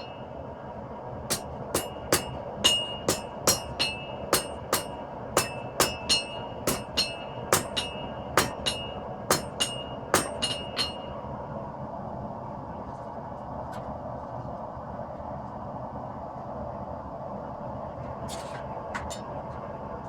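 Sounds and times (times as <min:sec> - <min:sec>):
hammer striking steel on anvil: 0:01.3 - 0:11.2.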